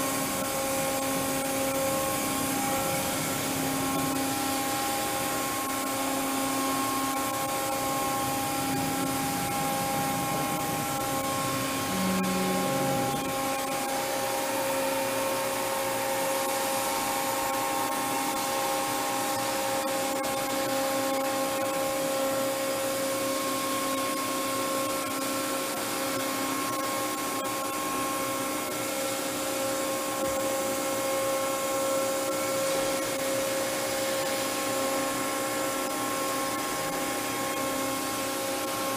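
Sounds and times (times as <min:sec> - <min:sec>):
machine hum of even tones: 0:00.0 - 0:17.6
machine steady hiss: 0:00.0 - 0:38.9
brief low tone: 0:09.4 - 0:13.5.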